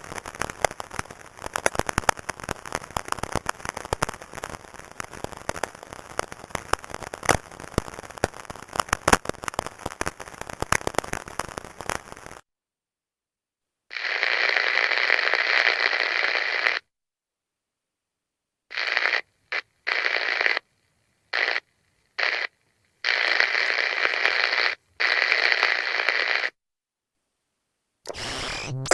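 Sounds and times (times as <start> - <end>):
walkie-talkie static hiss: 13.9 - 16.8, 18.7 - 26.6, 28.1 - 28.9.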